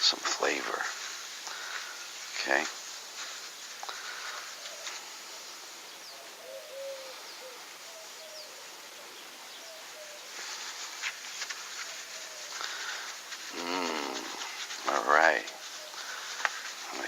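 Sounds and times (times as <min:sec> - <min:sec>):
faint outdoor hiss: 0:00.0 - 0:17.0
bird cooing: 0:04.4 - 0:05.0, 0:06.0 - 0:10.6, 0:11.8 - 0:14.6.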